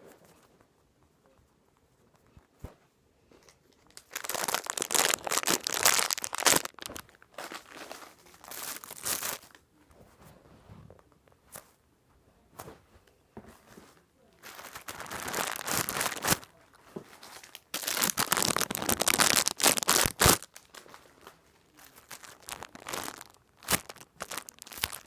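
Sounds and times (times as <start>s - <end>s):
plastic packaging crinkling: 3.6s - 9.6s, 14.4s - 25.0s.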